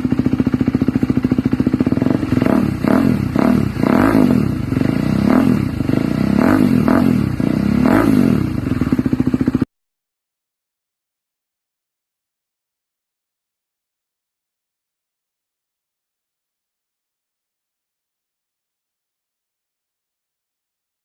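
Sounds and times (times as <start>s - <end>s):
motorcycle engine idling and revving: 0.0s - 9.7s.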